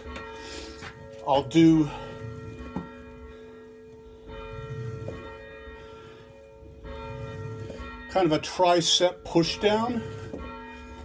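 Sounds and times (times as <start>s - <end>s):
church bell ringing: 0.0s - 11.0s.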